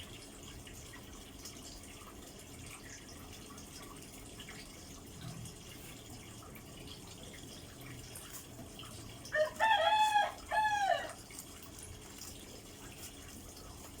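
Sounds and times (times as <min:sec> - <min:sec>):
rooster crowing: 0:09.3 - 0:11.2.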